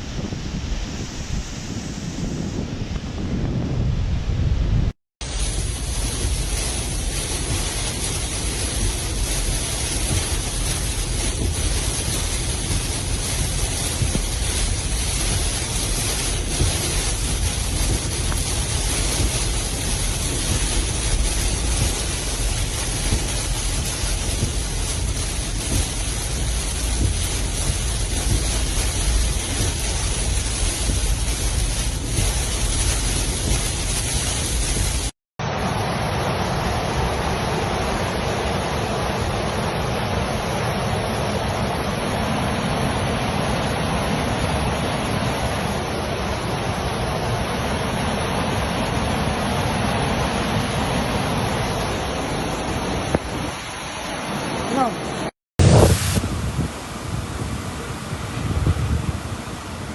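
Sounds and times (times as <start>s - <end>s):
heavy rain: 0.0s - 59.9s
rushing cyclone wind and water: 0.0s - 59.9s
low rumble: 3.2s - 38.0s.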